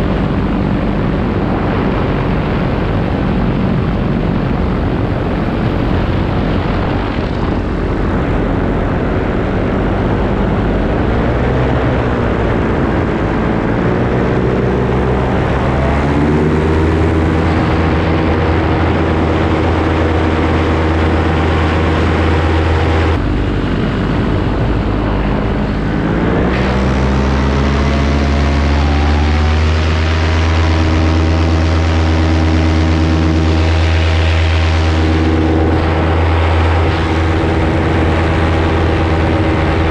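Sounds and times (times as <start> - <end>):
paramotor engine and propeller: 0.0 - 39.9.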